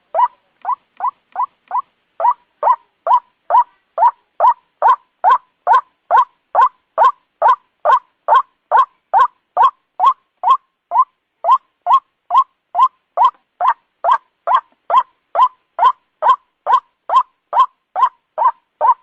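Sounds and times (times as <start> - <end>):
bird croaking call: 0.0 - 19.0.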